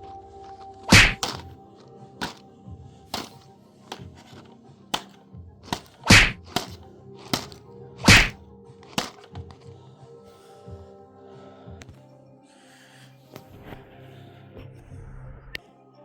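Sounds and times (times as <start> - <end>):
sharp knocks and whacks: 0.9 - 1.5, 2.2 - 2.4, 3.1 - 9.6.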